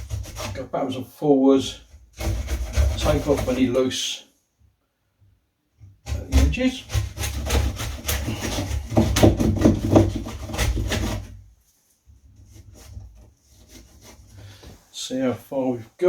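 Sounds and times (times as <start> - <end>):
hand tool rasping wood: 0.0 - 0.7, 1.6 - 3.8, 6.0 - 11.4, 12.4 - 14.8.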